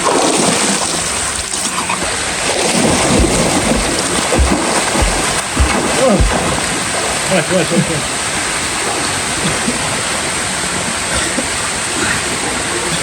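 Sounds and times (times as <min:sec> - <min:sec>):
waterfall rushing: 0:02.6 - 0:09.3
low thuds: 0:02.8 - 0:07.2.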